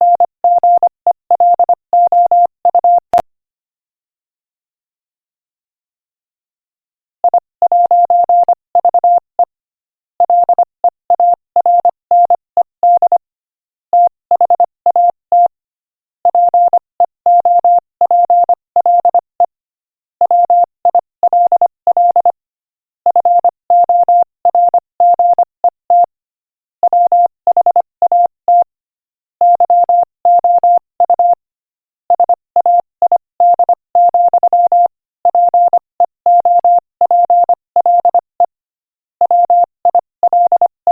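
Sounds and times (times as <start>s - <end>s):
morse code beeps: 0.0s - 3.0s, 7.2s - 9.2s, 10.3s - 10.6s, 11.2s - 13.2s, 14.0s - 15.5s, 16.3s - 19.3s, 20.3s - 22.4s, 23.1s - 26.1s, 26.8s - 28.7s, 29.4s - 31.4s, 32.1s - 38.5s, 39.2s - 40.9s.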